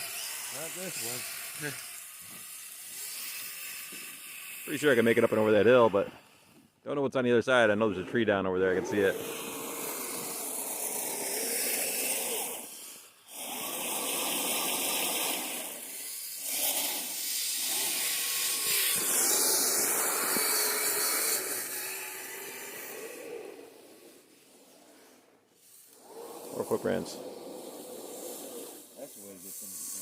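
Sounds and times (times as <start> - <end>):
electric motor whining: 0.0 - 6.0, 8.6 - 23.8.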